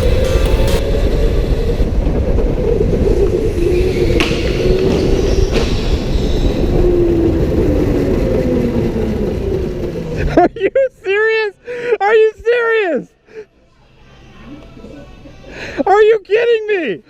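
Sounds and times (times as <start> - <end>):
electric go-kart motors whining: 0.0 - 10.4
rumble of tyres and chassis: 0.0 - 10.6.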